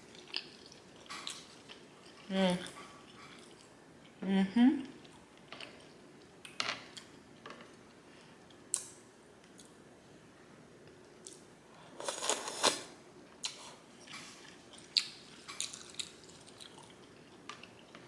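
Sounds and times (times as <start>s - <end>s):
slurping noodles: 12.0s - 12.9s.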